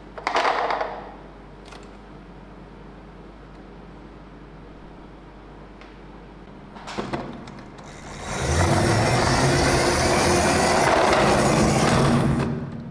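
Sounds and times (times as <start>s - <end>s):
motor running with low hum: 7.8s - 12.9s.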